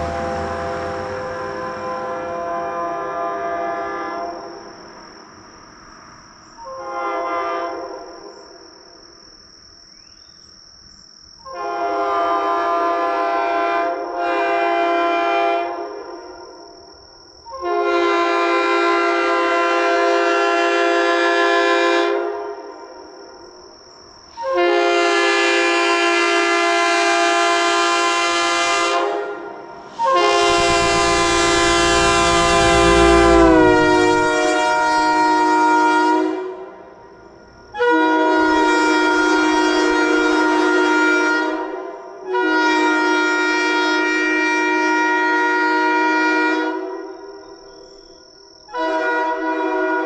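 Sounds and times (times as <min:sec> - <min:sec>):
locomotive air horn blasts: 0:00.0 - 0:04.4, 0:06.6 - 0:08.1, 0:11.4 - 0:15.9, 0:17.5 - 0:22.5, 0:24.4 - 0:36.8, 0:37.7 - 0:47.2, 0:48.7 - 0:50.0
faint high whine: 0:30.5 - 0:35.0.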